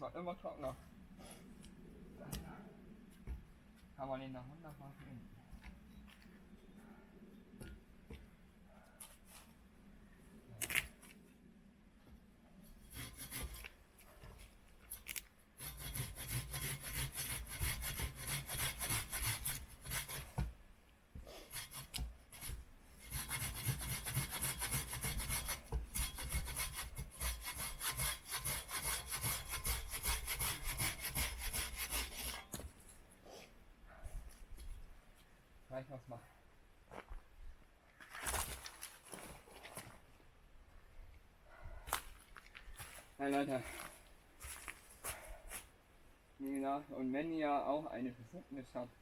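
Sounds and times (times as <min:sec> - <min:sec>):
hand saw cutting wood: 0:12.8 - 0:13.8, 0:15.0 - 0:20.5, 0:21.2 - 0:32.7.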